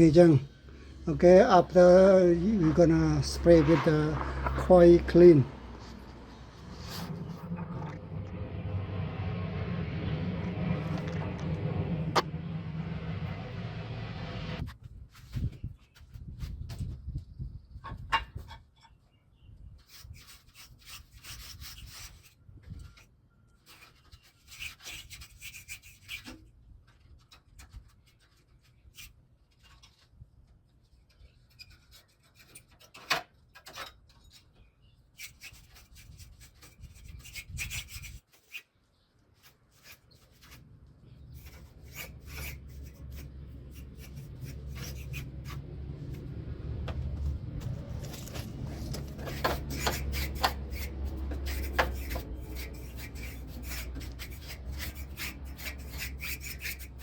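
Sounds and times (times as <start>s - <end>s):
low hum: 0.0s - 14.8s, 40.5s - 56.0s
brush scrubbing metal fins: 23.6s - 26.4s, 39.3s - 46.8s, 47.6s - 57.0s.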